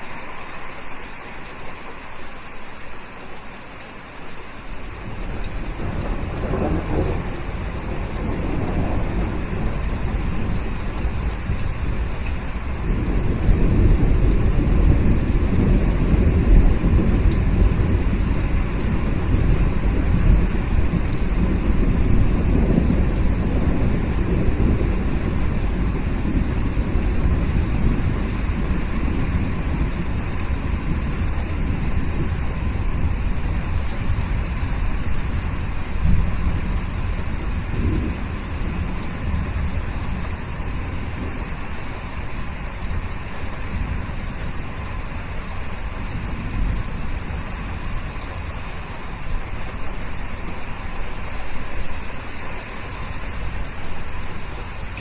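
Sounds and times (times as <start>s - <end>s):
steady rain: 0.0s - 55.0s
rolling thunder rumble: 5.0s - 44.9s.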